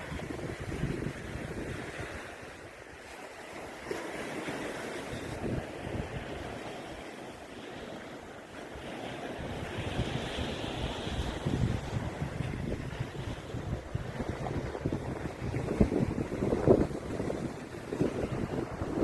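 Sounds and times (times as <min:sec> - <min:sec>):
wind buffeting microphone: 0:00.0 - 0:02.7, 0:05.1 - 0:06.7, 0:08.6 - 0:19.0.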